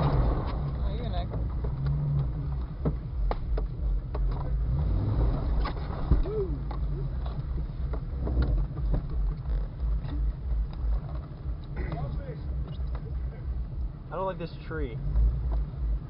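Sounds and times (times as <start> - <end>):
car engine running low: 0.0 - 16.0
body and brush clicks and knocks: 1.2 - 4.6, 5.6 - 13.2.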